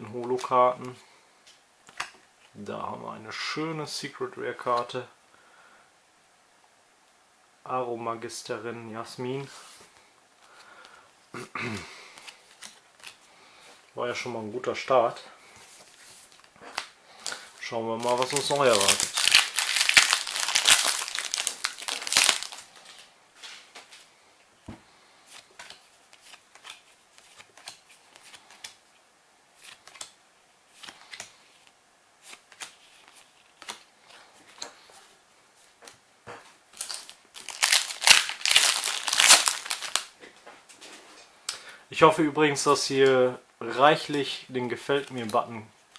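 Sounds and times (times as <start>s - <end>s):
foil wrappers crinkling and tearing: 16.3s - 23.1s, 36.8s - 40.1s
trading cards clicking and rustling: 18.0s - 23.0s, 36.8s - 40.0s.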